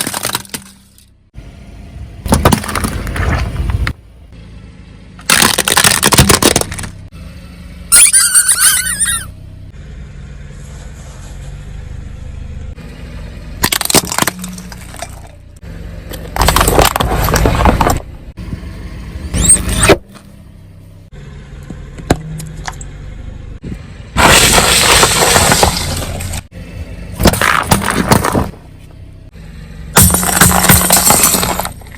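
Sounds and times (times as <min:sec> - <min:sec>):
objects crunching under wheels: 0:00.0 - 0:01.1, 0:02.3 - 0:04.0, 0:05.2 - 0:07.1, 0:13.6 - 0:15.5, 0:16.1 - 0:18.4, 0:24.2 - 0:26.5, 0:27.2 - 0:29.0, 0:30.0 - 0:31.9
car engine running low: 0:00.2 - 0:31.9
sharp cracks: 0:05.2 - 0:07.0
squeaky wavering squeal: 0:07.9 - 0:09.4, 0:19.3 - 0:19.9.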